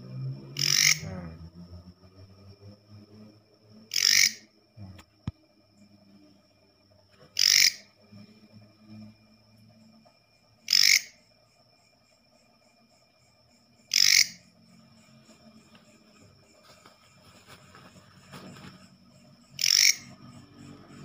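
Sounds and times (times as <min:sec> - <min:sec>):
faint high-pitched whine: 0:00.0 - 0:21.0
katydid calls: 0:00.5 - 0:01.6, 0:03.9 - 0:05.0, 0:07.3 - 0:08.0, 0:10.6 - 0:11.4, 0:13.7 - 0:15.0, 0:19.2 - 0:20.8.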